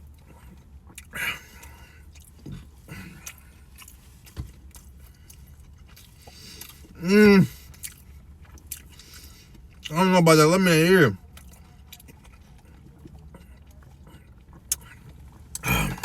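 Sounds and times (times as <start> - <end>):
chewing with crunches: 0.0 - 16.0.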